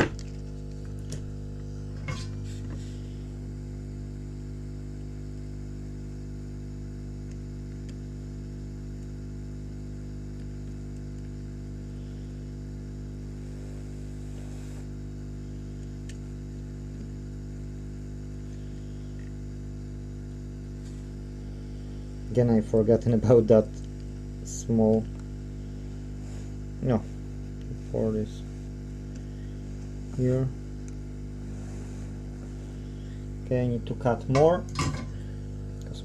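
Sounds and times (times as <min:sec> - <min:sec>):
electrical hum: 0:00.0 - 0:36.0.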